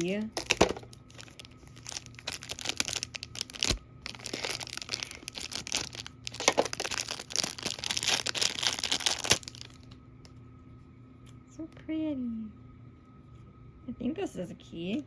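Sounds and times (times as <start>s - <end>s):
toy packaging crinkling: 0.0s - 9.9s.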